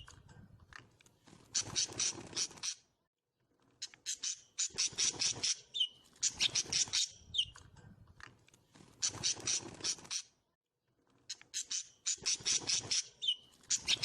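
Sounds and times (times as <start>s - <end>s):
small birds chirping harshly: 1.4s - 3.0s, 3.8s - 7.7s, 8.8s - 10.4s, 11.3s - 14.0s.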